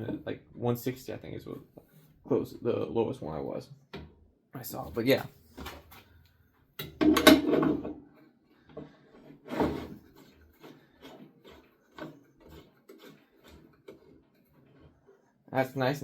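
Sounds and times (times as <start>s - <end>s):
metal saw rig clunking and scraping: 6.8s - 8.1s, 8.7s - 15.0s.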